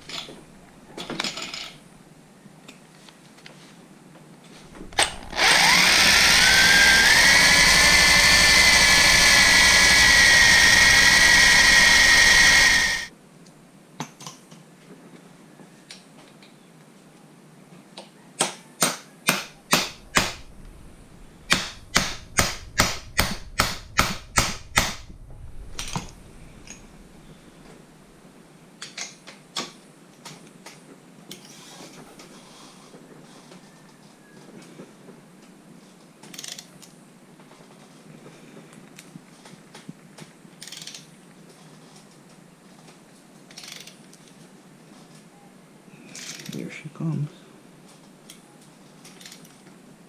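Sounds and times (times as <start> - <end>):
power drill whining: 4.7 - 13.1, 19.7 - 27.8
sharp tapping on metal bit: 21.5 - 25.1.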